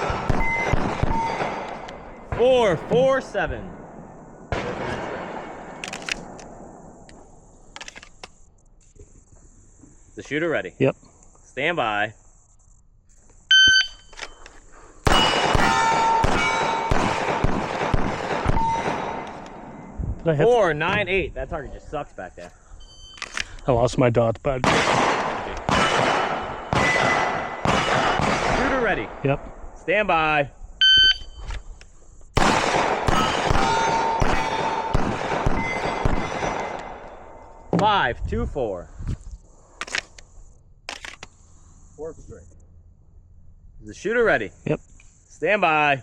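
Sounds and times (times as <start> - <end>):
steel targets ringing: 0.0 - 3.1, 15.1 - 20.0, 25.2 - 28.2, 33.0 - 37.4
pistol shots: 0.0 - 7.3, 15.0 - 20.0, 24.6 - 29.8, 32.4 - 37.5
shot timer beep: 13.5 - 14.2, 30.8 - 31.5.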